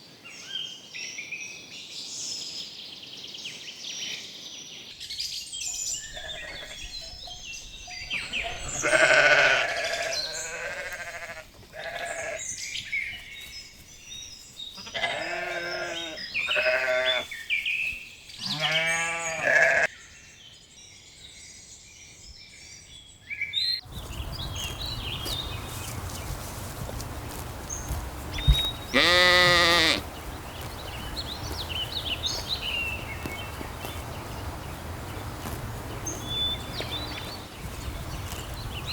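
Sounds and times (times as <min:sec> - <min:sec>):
birds chirping: 0:05.1 - 0:19.9, 0:23.8 - 0:38.9
sheep bleating: 0:06.1 - 0:06.9, 0:08.2 - 0:12.4, 0:14.7 - 0:17.3, 0:18.4 - 0:19.9, 0:28.2 - 0:37.4.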